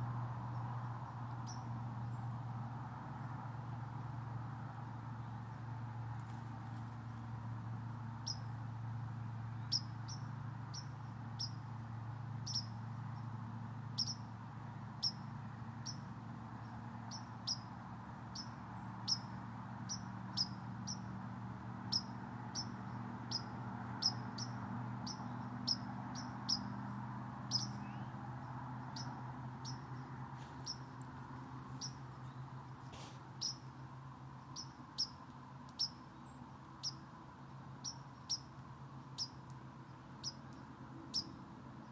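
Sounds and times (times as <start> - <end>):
bird chirping: 0.5 - 2.3, 8.2 - 8.6, 9.5 - 11.8, 12.4 - 13.3, 13.9 - 14.3, 15.0 - 21.1, 21.9 - 33.7, 34.4 - 39.4, 40.2 - 41.9.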